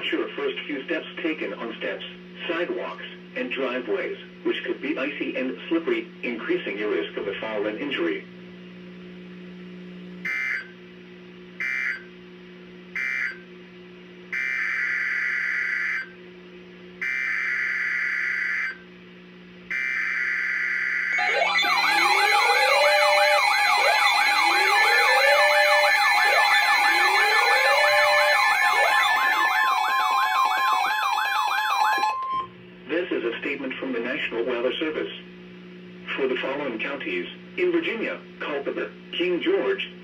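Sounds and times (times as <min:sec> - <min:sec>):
two-tone attention alarm: 0:10.3 - 0:10.7, 0:11.6 - 0:12.0, 0:13.0 - 0:13.4, 0:14.4 - 0:16.1, 0:17.0 - 0:18.8, 0:19.7 - 0:32.5.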